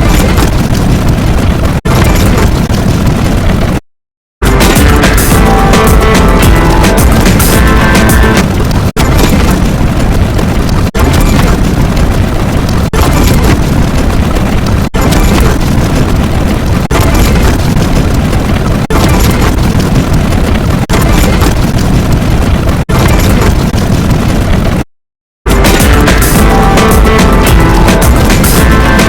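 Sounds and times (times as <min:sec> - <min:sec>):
booming explosion-like noise: 0:04.4 - 0:24.9.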